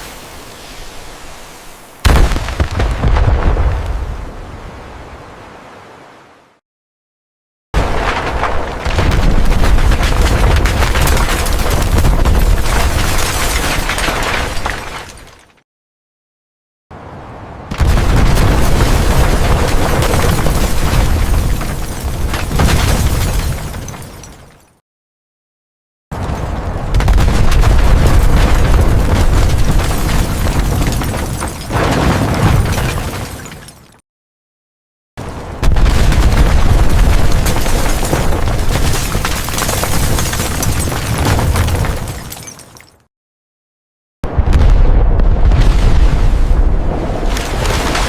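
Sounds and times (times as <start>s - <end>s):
explosion rumble with crackles: 0.0s - 4.7s, 7.8s - 14.9s, 17.7s - 23.9s, 26.2s - 33.2s, 35.2s - 42.3s, 44.2s - 48.0s
explosion with deep rumble: 2.0s - 4.4s, 17.7s - 21.7s, 26.4s - 31.1s, 44.2s - 47.4s.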